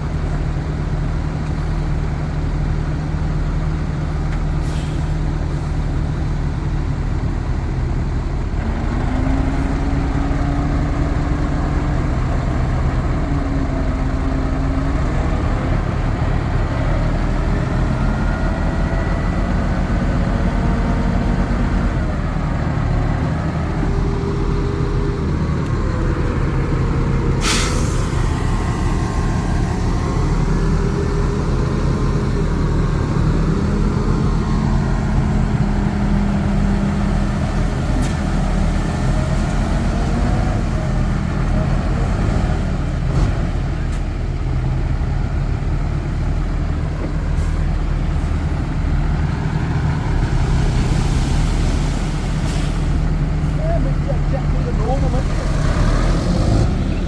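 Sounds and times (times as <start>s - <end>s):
diesel machinery running: 0.0s - 57.0s
short sharp hiss: 27.4s - 28.2s.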